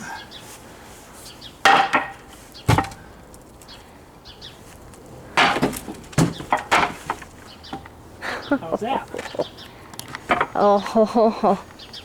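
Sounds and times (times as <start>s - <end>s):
wood cracking and splintering: 1.7s - 3.7s, 5.4s - 7.3s.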